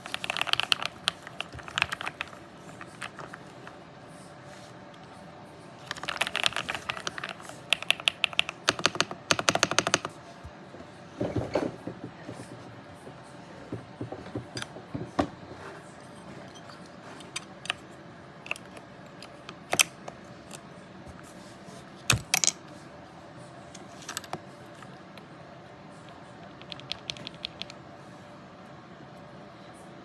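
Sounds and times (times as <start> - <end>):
keyboard key clicks: 5.9 - 10.1.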